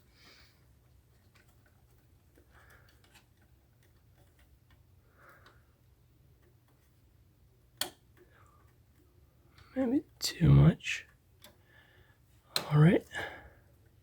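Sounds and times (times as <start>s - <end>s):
cables and plastic rustling: 0.0s - 7.2s.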